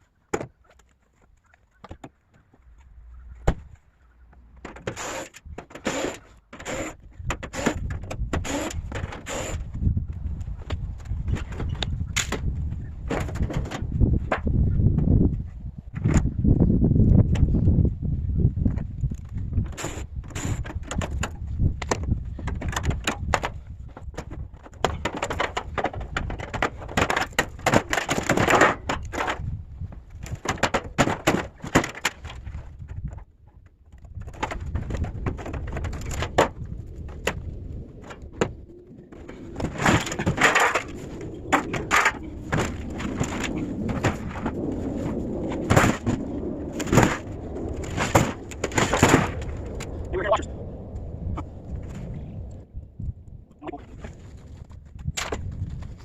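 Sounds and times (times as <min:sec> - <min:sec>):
scrap metal clanking and scraping: 0:39.1 - 0:44.6.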